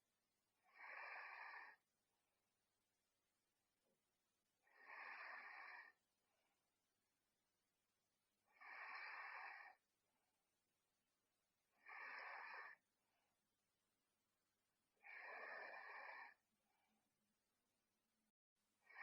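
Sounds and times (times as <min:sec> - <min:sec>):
girl snoring softly: 0:00.6 - 0:01.8, 0:04.6 - 0:06.0, 0:08.4 - 0:09.8, 0:11.7 - 0:12.9, 0:15.0 - 0:16.5.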